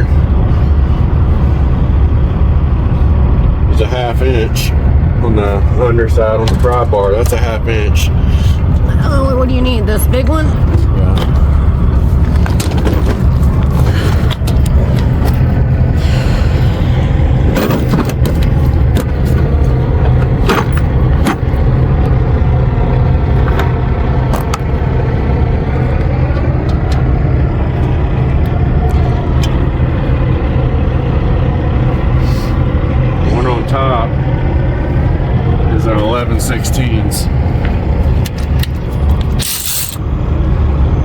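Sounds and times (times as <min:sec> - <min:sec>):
diesel truck engine idling: 0:00.0 - 0:41.0
metal tools clinking: 0:39.2 - 0:40.0.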